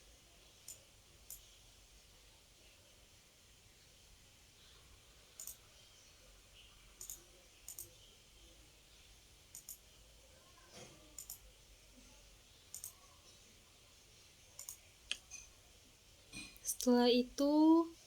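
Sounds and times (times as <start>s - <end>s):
computer mouse double clicks: 11.2s - 11.4s.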